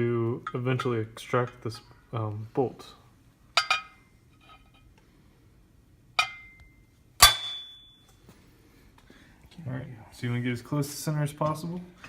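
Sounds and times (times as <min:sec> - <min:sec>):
hammer striking metal punch: 0:06.2 - 0:08.0.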